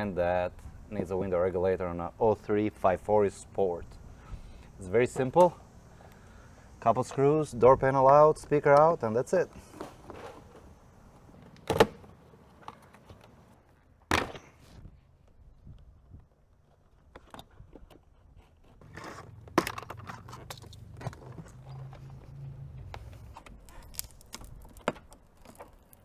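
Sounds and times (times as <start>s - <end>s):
light clicks and rattles: 18.8s - 26.0s.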